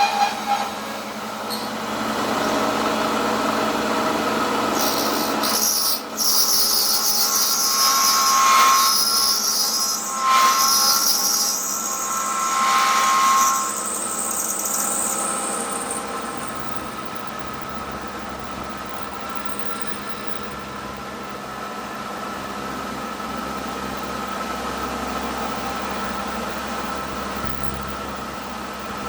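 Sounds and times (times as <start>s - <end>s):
end mill cutting metal: 0.0s - 17.6s.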